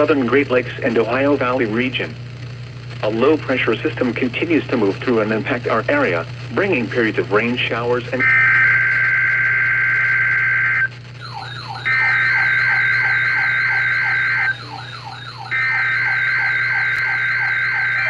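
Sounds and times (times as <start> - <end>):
shrill two-tone digital data bursts: 8.2 - 18.0
warbling high tone: 8.2 - 18.0
falling chirps: 11.2 - 18.0.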